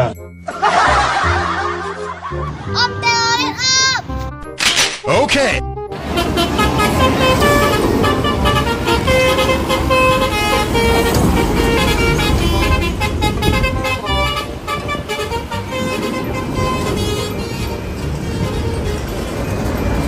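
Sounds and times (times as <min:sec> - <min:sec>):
large vehicle engine running: 0:05.9 - 0:20.0
multi-tone bus horn tune: 0:05.9 - 0:20.0.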